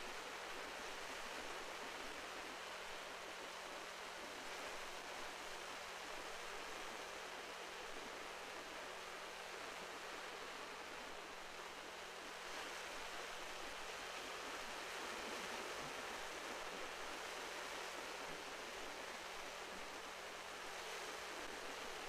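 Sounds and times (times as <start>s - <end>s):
sea surf washing on shore: 0.0s - 22.0s.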